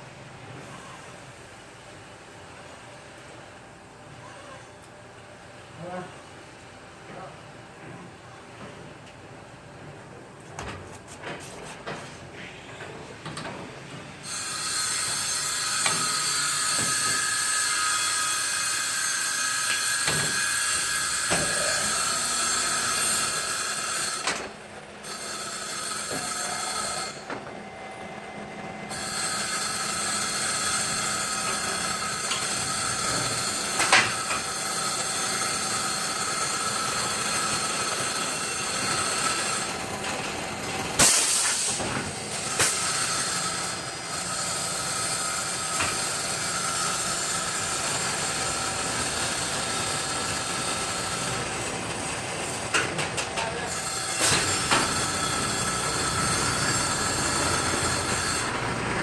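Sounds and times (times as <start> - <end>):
machine hissing and whining: 14.2 - 59.0.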